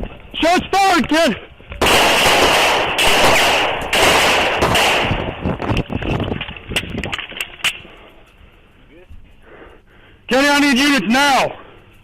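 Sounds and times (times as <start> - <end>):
rapid gunfire: 1.8 - 5.4.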